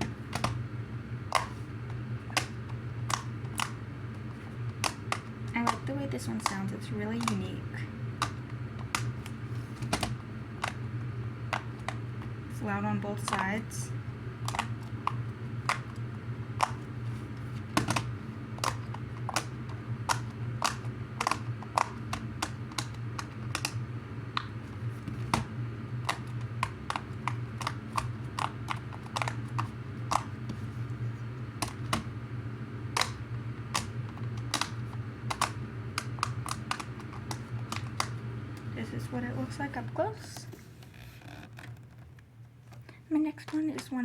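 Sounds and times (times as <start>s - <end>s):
plastic fidget toy clicking: 2.3s - 3.8s, 4.8s - 7.5s, 13.2s - 13.5s, 17.8s - 23.8s, 25.2s - 30.4s, 33.8s - 38.2s.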